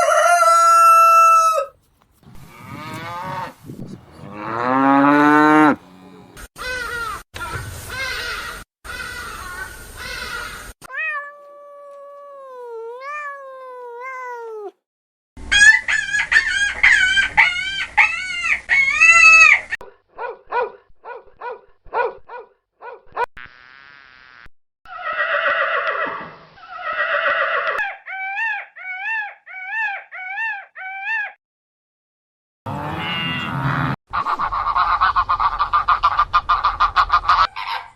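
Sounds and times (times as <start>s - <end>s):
animal calls: 1.2s - 10.7s, 32.7s - 37.9s.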